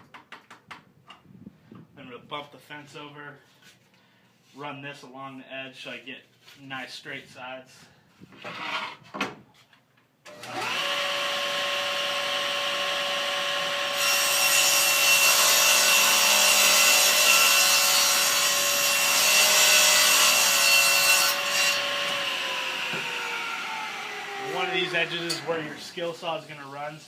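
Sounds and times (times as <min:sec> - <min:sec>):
table saw motor whine: 0:10.3 - 0:14.2, 0:21.8 - 0:25.8.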